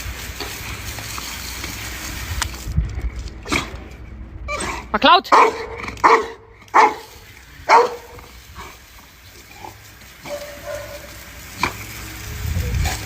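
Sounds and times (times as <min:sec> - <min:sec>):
dog barking: 0:04.6 - 0:07.1, 0:07.7 - 0:08.2, 0:10.2 - 0:11.2.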